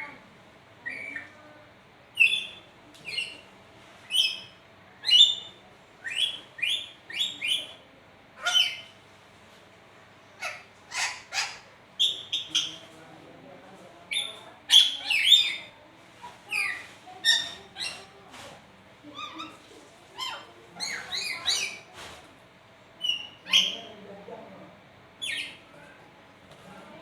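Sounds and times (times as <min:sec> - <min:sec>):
parrot chirps and squawks: 0:08.4 - 0:08.9, 0:10.4 - 0:12.8, 0:14.1 - 0:18.1, 0:19.1 - 0:19.6, 0:20.2 - 0:21.9, 0:23.0 - 0:24.0, 0:25.2 - 0:25.6.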